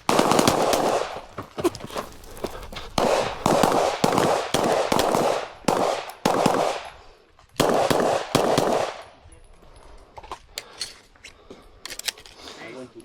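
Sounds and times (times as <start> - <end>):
pistol shots with echo: 0.0 - 1.3, 3.0 - 7.0, 7.6 - 9.2.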